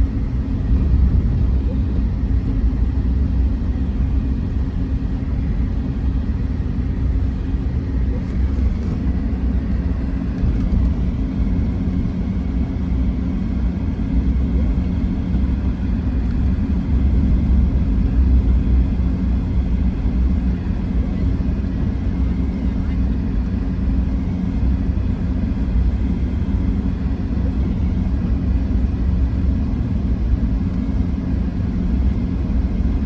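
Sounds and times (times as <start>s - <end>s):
car engine drone: 0.0s - 33.0s.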